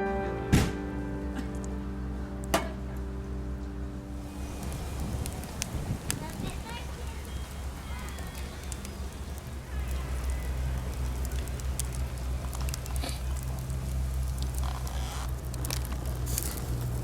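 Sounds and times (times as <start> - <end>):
steady low rumble: 0.0 - 7.4
campfire crackling and popping: 4.2 - 17.0.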